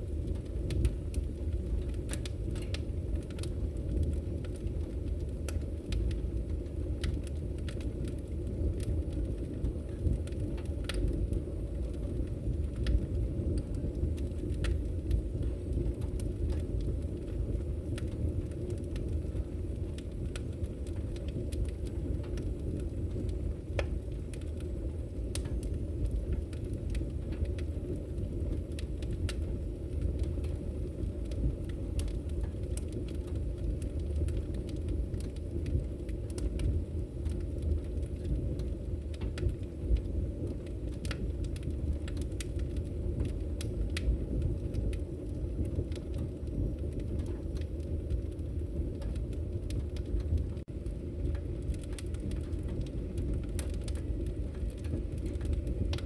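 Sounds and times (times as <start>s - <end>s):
crackles and pops of burning wood: 0.0s - 56.0s
low rush of flame: 0.0s - 56.0s.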